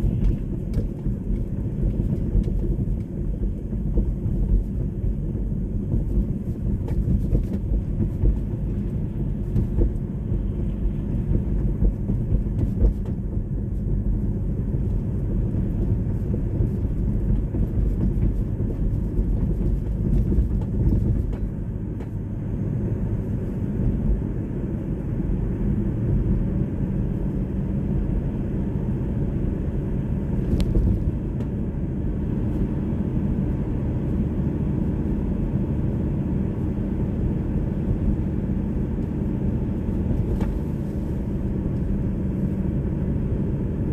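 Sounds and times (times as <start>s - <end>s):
car engine and road noise: 0.0s - 43.9s.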